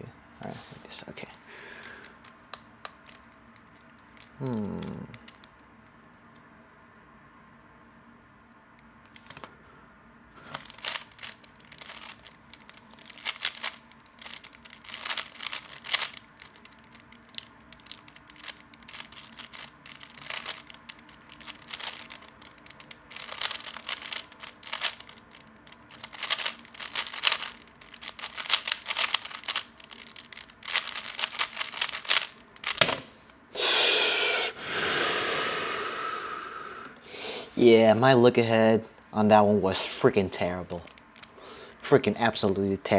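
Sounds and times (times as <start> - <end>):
puzzle cube clacking turns: 1.8 - 5.6, 9.0 - 9.5, 10.4 - 35.2.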